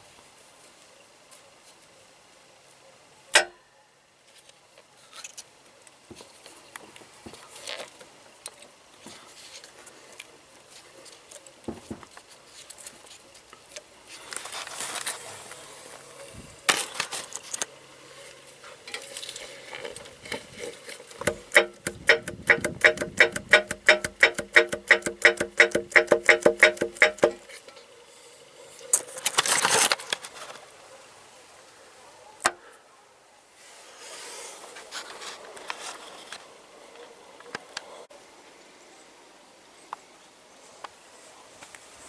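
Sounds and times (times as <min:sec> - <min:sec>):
rattling clatter: 0:21.2 - 0:27.4
sharp knock: 0:21.3 - 0:27.4.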